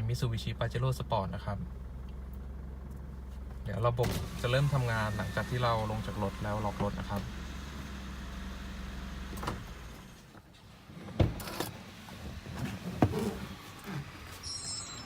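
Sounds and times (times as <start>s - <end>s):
low hum in truck cabin: 0.0s - 15.0s
person climbing out of truck: 10.4s - 14.8s.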